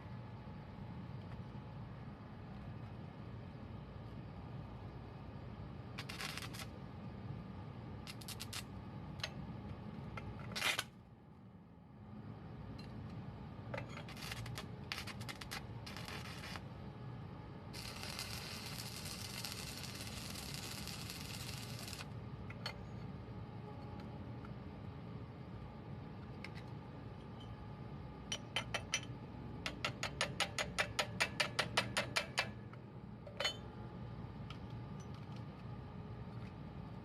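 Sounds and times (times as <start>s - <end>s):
steady low hum: 0.0s - 37.0s
hiss-like noise: 17.7s - 22.2s
clicks and knocks of tools: 26.3s - 27.6s, 28.3s - 29.1s, 34.4s - 35.7s.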